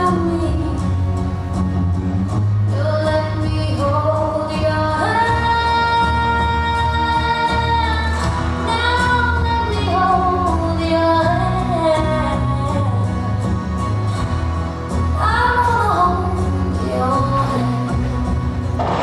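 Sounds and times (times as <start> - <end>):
pop song with woman singing: 0.0 - 0.9, 2.7 - 13.1, 15.2 - 18.0
steady bass: 0.0 - 19.0.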